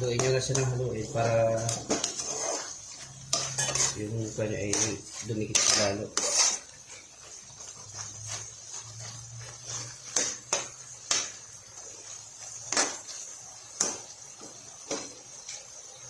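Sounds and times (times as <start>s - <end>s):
utensil scraping a pan: 0.0s - 15.7s.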